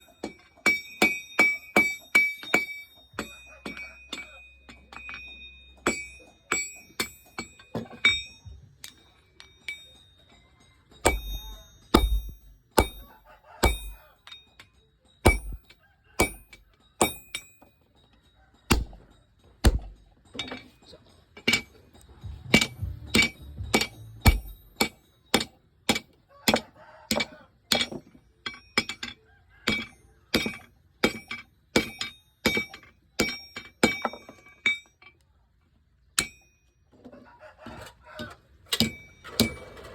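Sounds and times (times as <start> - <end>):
hammer striking metal on anvil: 0.0 - 10.0, 11.0 - 14.6, 15.2 - 17.8, 18.7 - 20.7, 21.4 - 34.9, 36.2 - 36.6, 38.7 - 39.6
heavy dull hammer blows: 11.1 - 14.0, 15.3 - 17.4, 22.3 - 25.0.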